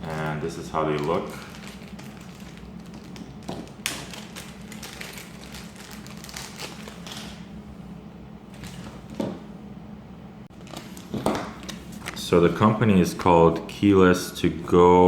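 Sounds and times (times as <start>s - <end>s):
steady low hum: 0.0s - 15.0s
plastic items tapping and clicking: 0.9s - 5.6s.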